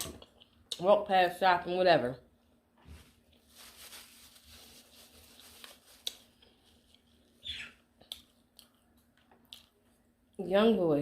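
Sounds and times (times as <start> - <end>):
soft chewing: 5.3 - 10.4.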